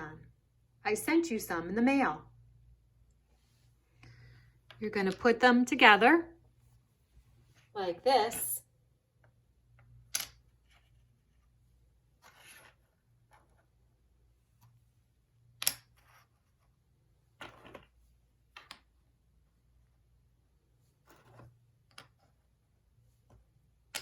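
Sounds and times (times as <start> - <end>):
soft rustles of pieces: 6.4 - 19.1, 20.6 - 23.7.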